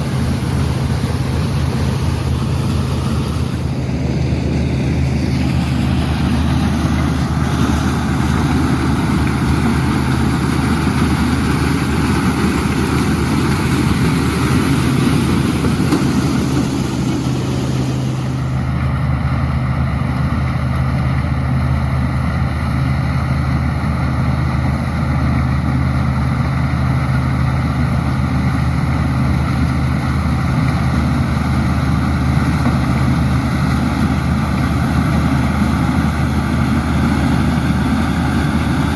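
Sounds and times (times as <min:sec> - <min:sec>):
rushing noise: 0:00.0 - 0:19.0
combine harvester engine drone: 0:00.0 - 0:38.9.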